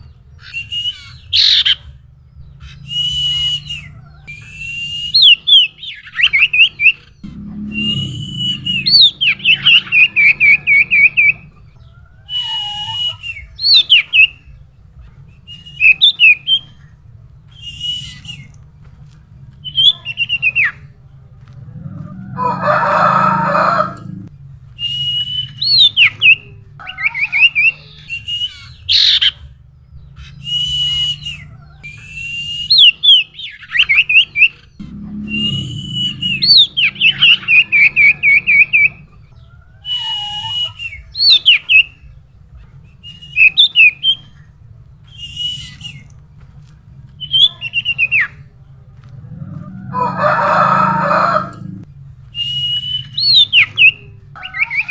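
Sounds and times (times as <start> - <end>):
bird whistling and trilling: 0.4 - 1.8, 2.6 - 11.5, 12.3 - 14.4, 17.5 - 18.6, 24.8 - 29.4, 30.2 - 39.0, 39.8 - 42.0, 43.0 - 44.4, 45.0 - 46.1, 52.4 - 54.9
low steady hum: 5.9 - 12.6, 16.4 - 26.8, 34.6 - 39.8, 44.2 - 54.6
harsh noisy sound: 7.2 - 11.4, 34.8 - 38.9.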